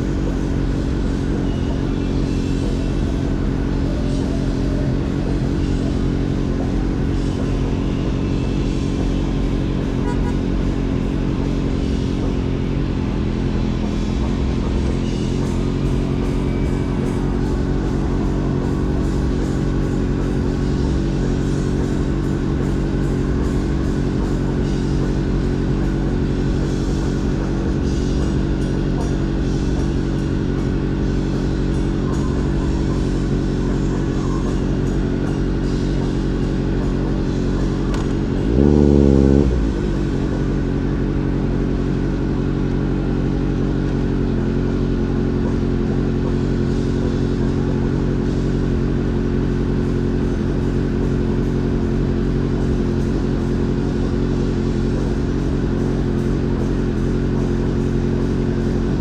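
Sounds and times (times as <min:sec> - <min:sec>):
motorcycle engine cruising: 0:00.0 - 0:59.0
motorcycle engine revving: 0:00.0 - 0:59.0.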